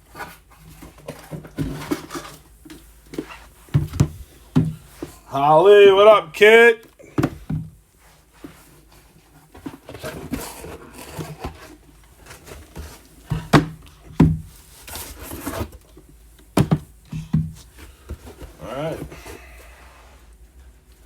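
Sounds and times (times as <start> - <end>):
card boxes knocking on table: 3.7 - 5.1, 13.3 - 14.5, 16.6 - 18.2.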